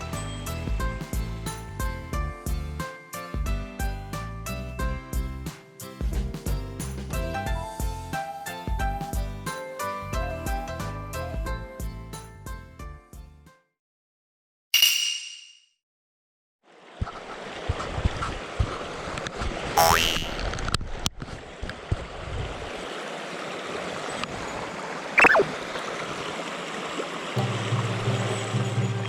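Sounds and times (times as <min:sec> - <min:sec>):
stream water rushing: 0:22.7 - 0:27.4
short gliding tones: 0:25.2 - 0:25.6.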